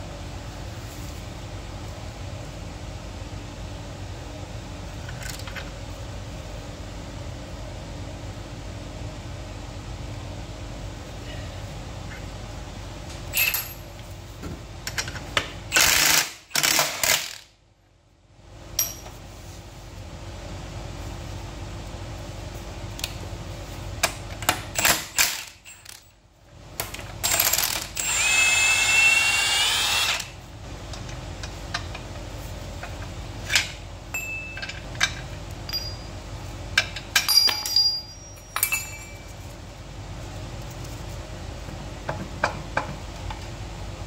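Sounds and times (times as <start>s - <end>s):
power tool whining: 27.2s - 30.4s
hand tools clinking on metal: 33.6s - 36.2s, 36.8s - 39.4s.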